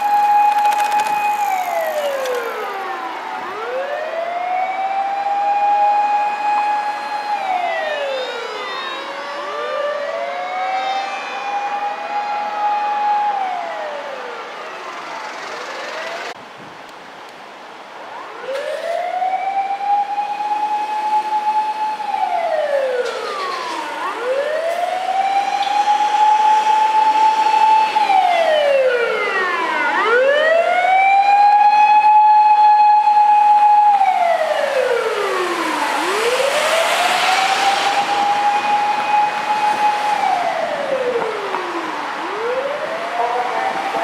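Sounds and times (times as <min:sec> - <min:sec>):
fire engine siren wailing: 0:00.0 - 0:16.4, 0:18.1 - 0:44.0
second siren: 0:00.0 - 0:16.4, 0:18.1 - 0:44.0.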